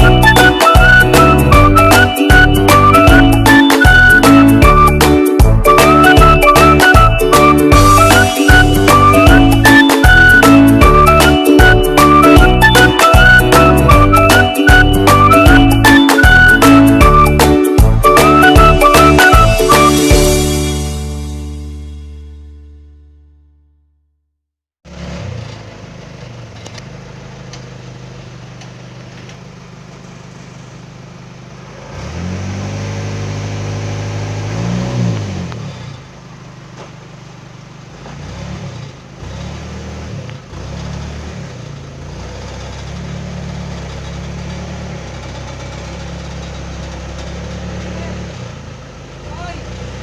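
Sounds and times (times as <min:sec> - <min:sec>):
engine revving: 0:24.9 - 0:27.6, 0:30.0 - 0:36.9, 0:37.7 - 0:50.0.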